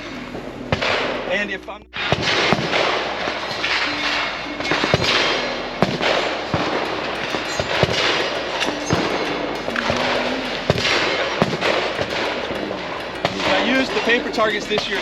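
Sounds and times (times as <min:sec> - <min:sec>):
gunshots: 0:02.0 - 0:03.9.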